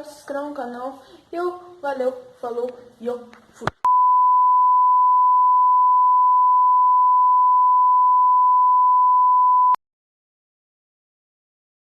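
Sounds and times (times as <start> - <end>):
steady electronic beep: 3.9 - 9.8.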